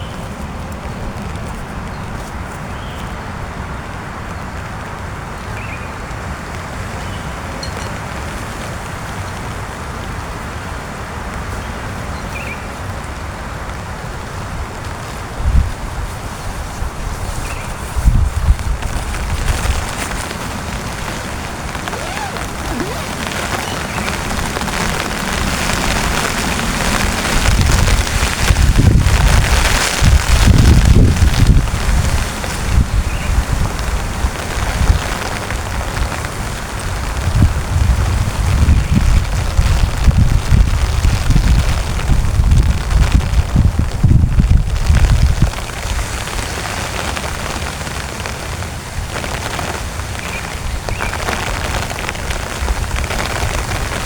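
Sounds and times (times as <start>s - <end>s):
heavy rain on a tent: 0.0s - 54.0s
faint short high chirps: 22.0s - 24.0s
wind buffeting microphone: 37.1s - 45.7s.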